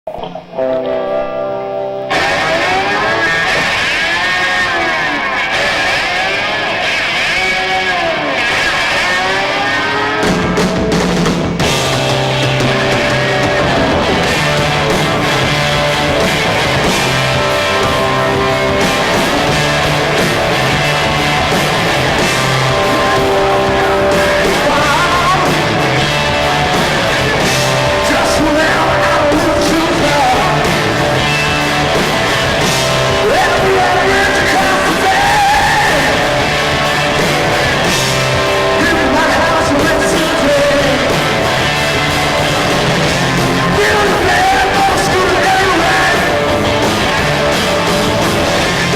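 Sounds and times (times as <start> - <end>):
hard rock band playing live: 0.1 - 48.9
sliding lead guitar line: 0.1 - 48.9.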